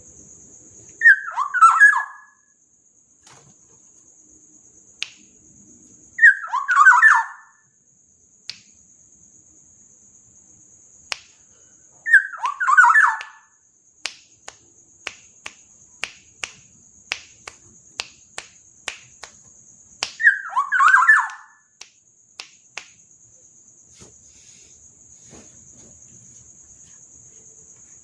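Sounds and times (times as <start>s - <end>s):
bird whistling fluted phrases: 1.0s - 2.4s, 6.2s - 7.5s, 12.1s - 13.4s, 20.2s - 21.6s.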